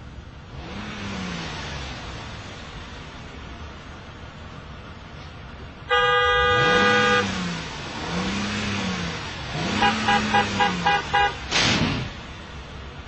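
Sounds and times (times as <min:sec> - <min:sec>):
car engine revving: 0:00.0 - 0:03.4, 0:05.9 - 0:12.6
car horn honking: 0:05.9 - 0:07.5, 0:09.6 - 0:11.5.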